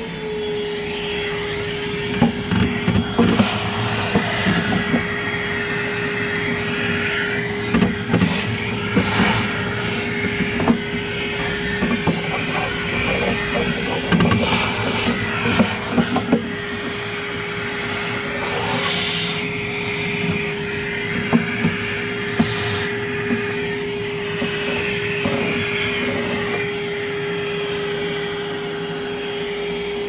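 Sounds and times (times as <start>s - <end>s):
vacuum whining with rushing air: 0.0s - 30.0s
sharp clicks and knocks: 2.1s - 17.0s.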